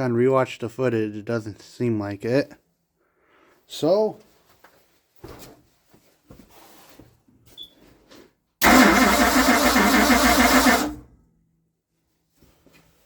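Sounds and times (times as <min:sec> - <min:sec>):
starter cranking engine: 0:08.6 - 0:11.1.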